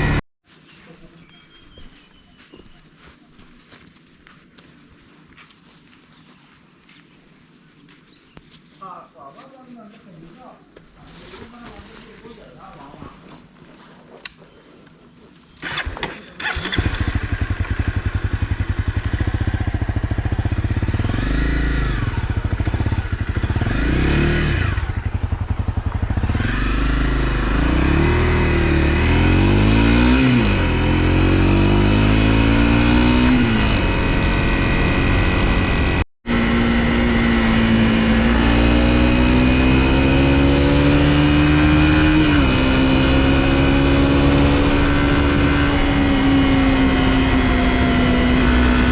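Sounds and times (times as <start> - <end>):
motorcycle engine revving: 0.0 - 0.2, 15.6 - 48.9
gear changes: 15.4 - 48.9.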